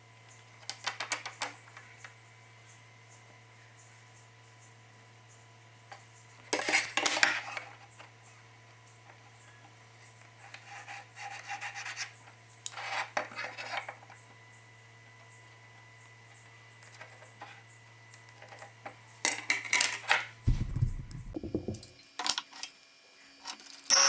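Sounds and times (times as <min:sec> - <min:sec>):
hand scraping on plywood: 0:20.5 - 0:21.8.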